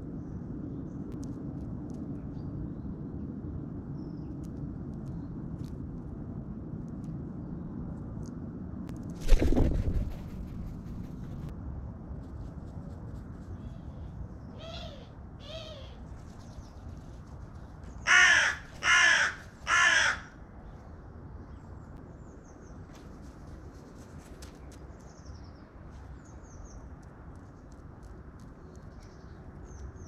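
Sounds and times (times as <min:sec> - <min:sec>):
low background rumble: 0:00.0 - 0:30.0
crow cawing: 0:18.0 - 0:20.4.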